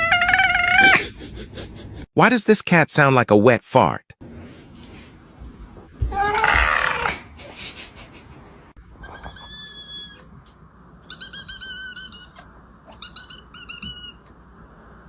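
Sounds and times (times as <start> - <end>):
cat squeaking: 0.0 - 1.0, 6.1 - 7.2, 9.0 - 10.3, 11.1 - 14.3.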